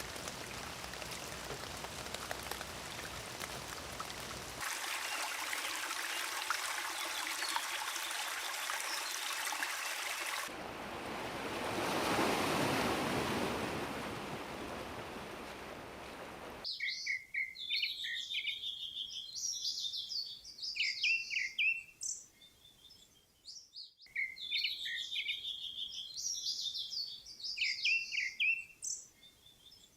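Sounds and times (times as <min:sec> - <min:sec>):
running water hissing: 0:00.0 - 0:10.5
songbirds chirping and trilling: 0:16.6 - 0:29.9.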